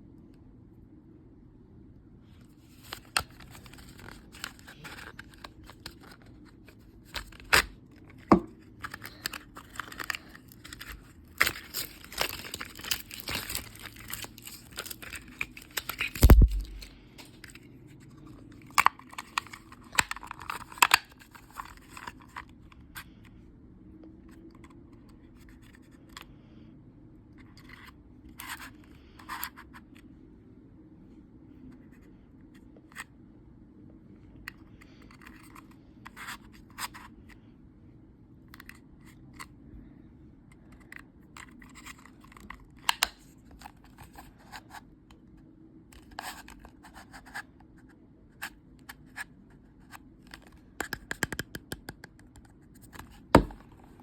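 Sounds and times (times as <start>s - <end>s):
packaging crinkling and tearing: 2.7s - 17.6s.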